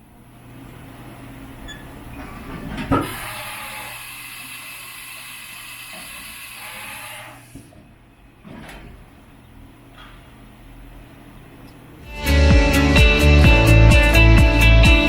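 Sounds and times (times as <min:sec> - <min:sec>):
low electrical hum: 0:00.0 - 0:06.0, 0:06.6 - 0:12.1
milling machine clunk: 0:02.2 - 0:03.4.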